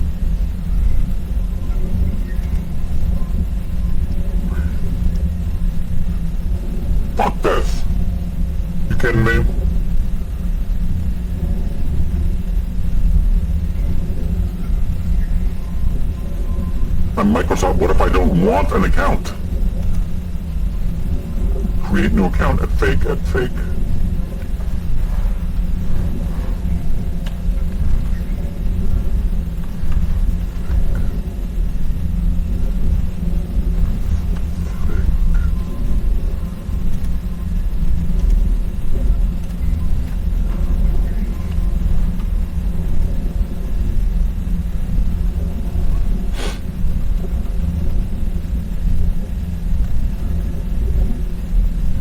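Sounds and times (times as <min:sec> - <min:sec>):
low rumble with hum: 0:00.0 - 0:52.0
low hum: 0:06.0 - 0:10.6, 0:14.7 - 0:29.1
steady low rumble: 0:14.4 - 0:26.2.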